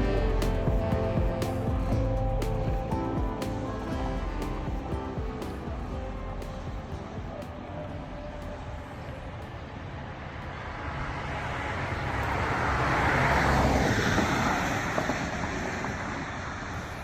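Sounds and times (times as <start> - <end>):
vehicle passing by: 10.2 - 17.0.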